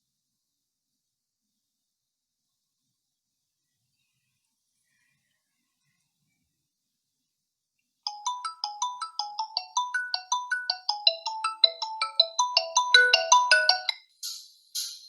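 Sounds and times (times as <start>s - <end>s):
phone ringtone melody: 8.1s - 14.0s.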